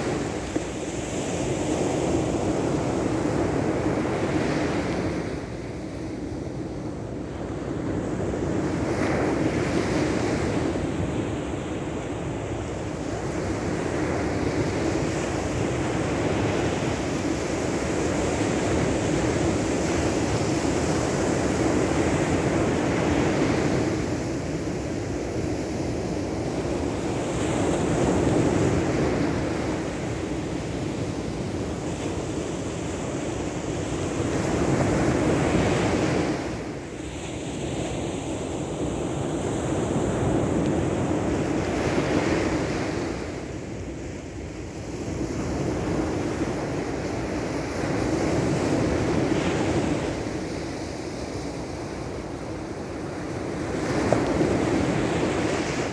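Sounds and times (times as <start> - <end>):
sea surf washing in: 0.0 - 55.9
wind on microphone: 0.0 - 55.9.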